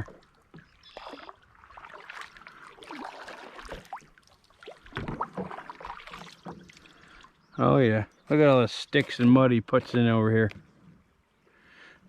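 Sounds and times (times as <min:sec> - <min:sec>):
water splashing and trickling: 0:00.0 - 0:10.1
paddle knocks and hull bumps: 0:04.9 - 0:06.7.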